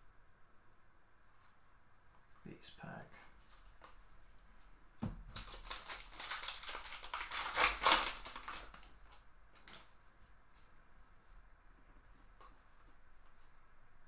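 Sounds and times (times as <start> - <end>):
card pack wrapper crinkling: 5.3 - 9.9.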